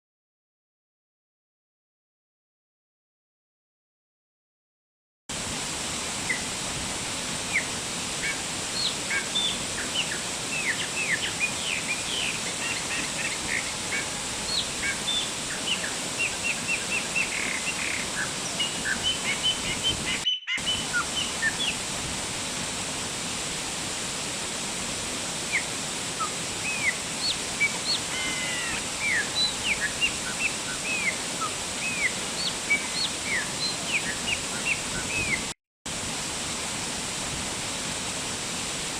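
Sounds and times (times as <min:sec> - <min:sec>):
waterfall: 0:05.3 - 0:38.9
birds chirping: 0:07.5 - 0:21.8, 0:25.5 - 0:35.5.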